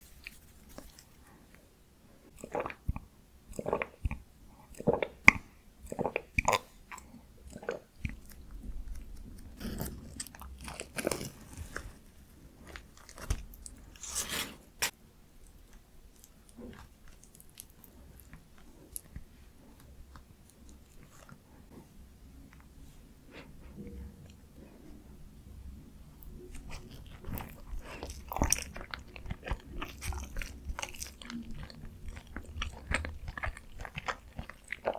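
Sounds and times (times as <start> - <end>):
biting and chewing: 2.4 - 12.0, 26.1 - 34.9.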